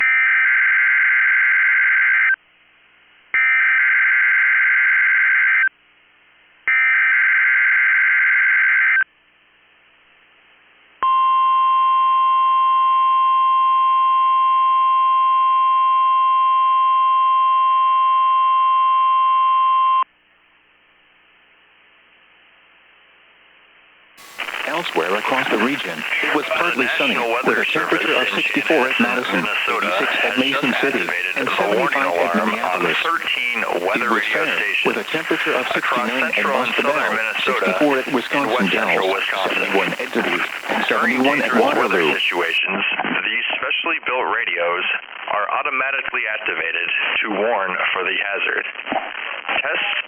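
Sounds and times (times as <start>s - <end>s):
faint radio hiss: 20.5s - 42.7s, 43.5s - 50.0s.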